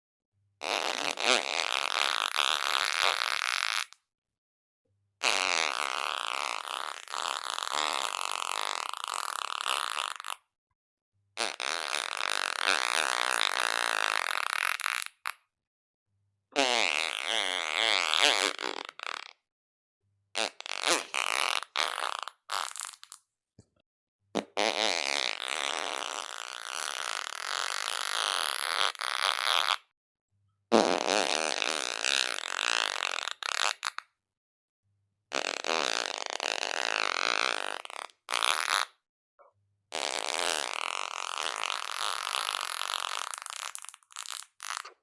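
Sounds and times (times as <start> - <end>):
farts with wavering pitch: 40.0 - 45.0.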